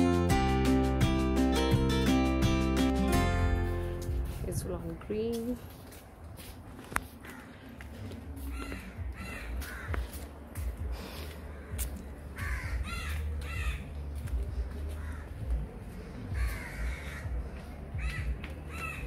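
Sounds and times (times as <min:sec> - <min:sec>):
crows cawing: 0:07.2 - 0:07.8, 0:08.5 - 0:10.2, 0:11.5 - 0:13.9, 0:14.9 - 0:15.4, 0:16.3 - 0:19.0.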